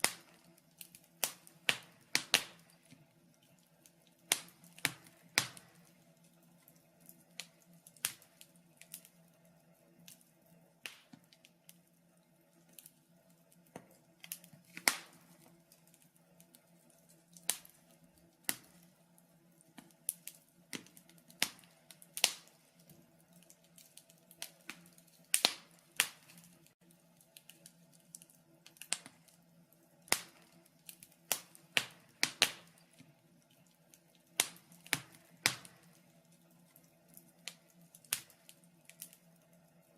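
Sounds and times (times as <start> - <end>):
faint steady hum: 0.0 - 39.9
sharp clicks and snaps: 19.7 - 29.4, 30.1 - 39.6.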